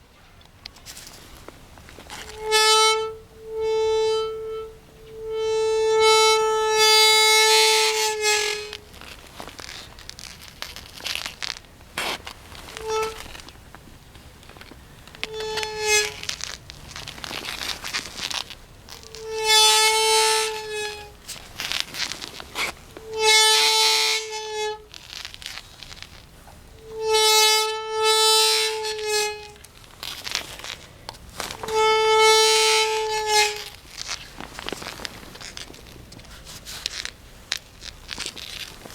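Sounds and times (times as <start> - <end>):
bicycle squealing: 1.0 - 38.9.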